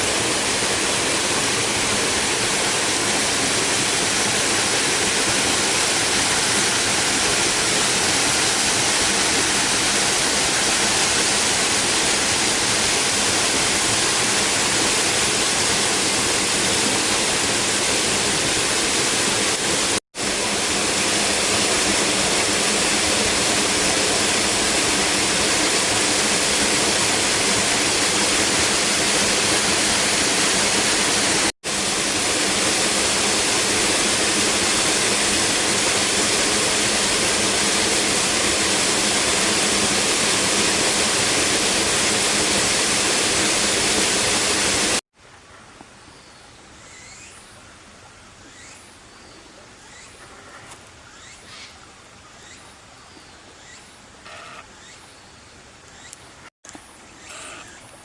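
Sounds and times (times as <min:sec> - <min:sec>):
waterfall roaring: 0:00.0 - 0:45.0.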